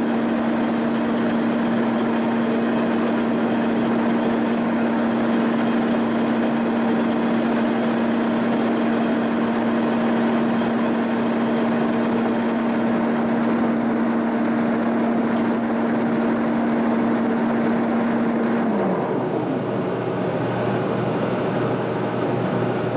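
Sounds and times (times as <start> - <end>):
milling machine hum: 0.0 - 22.9.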